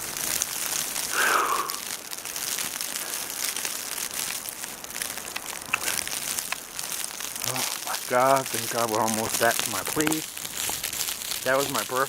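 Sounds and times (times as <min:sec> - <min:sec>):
short breathy sound: 0:01.1 - 0:01.8.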